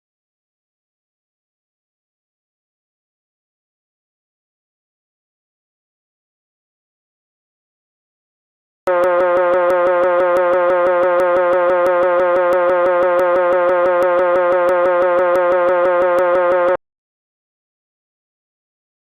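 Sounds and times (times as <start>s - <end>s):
loud pulsing buzzing tone: 8.9s - 16.8s.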